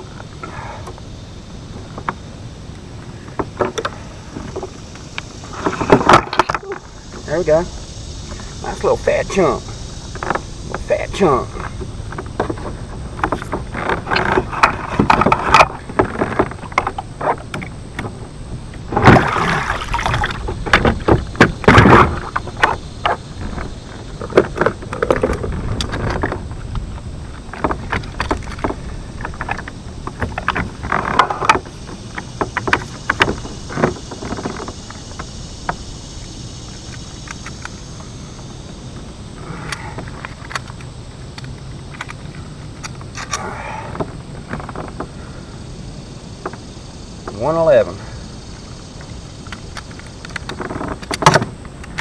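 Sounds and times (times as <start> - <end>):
wind: 0.0 - 52.0
water washing: 2.8 - 26.5.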